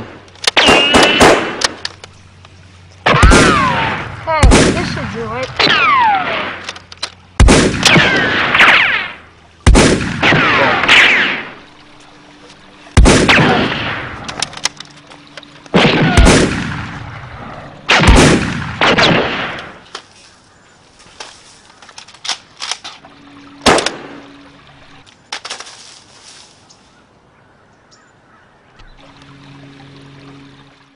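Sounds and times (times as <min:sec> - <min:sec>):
gunshots with falling whine: 0:00.0 - 0:01.8, 0:03.0 - 0:06.8, 0:07.4 - 0:11.7, 0:12.9 - 0:14.7, 0:15.7 - 0:19.8, 0:23.6 - 0:24.3.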